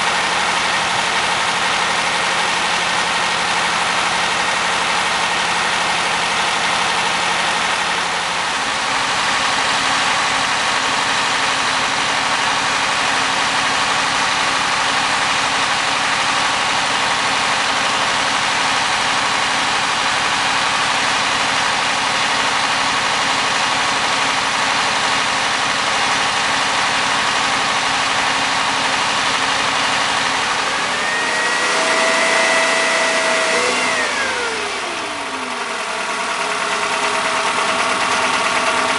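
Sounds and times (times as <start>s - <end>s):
engine running: 0.0s - 38.9s
engine whine: 28.0s - 38.9s.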